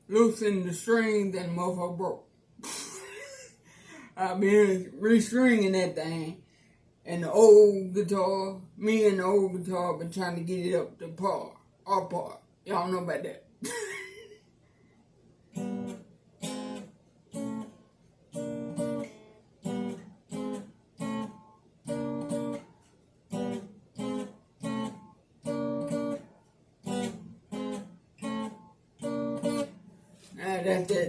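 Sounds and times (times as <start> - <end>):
acoustic guitar strumming chords: 15.6 - 31.0.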